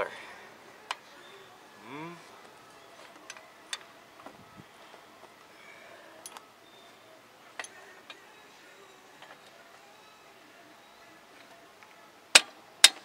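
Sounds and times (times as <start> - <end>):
hand tools clicking and clinking: 7.6 - 8.2.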